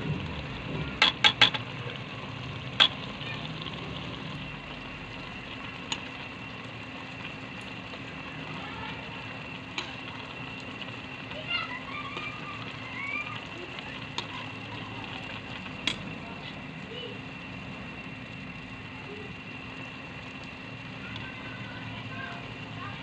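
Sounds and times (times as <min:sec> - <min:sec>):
steady hum: 0:00.0 - 0:23.0
metal utensil clinking on pan: 0:01.0 - 0:01.6.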